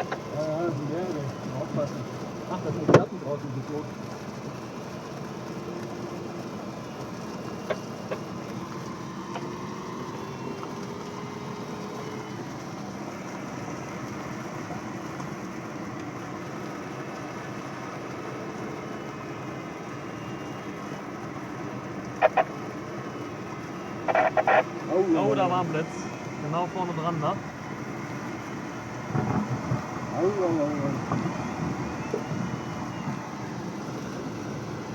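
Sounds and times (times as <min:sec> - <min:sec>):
aircraft cockpit rushing noise: 0:20.4 - 0:34.9.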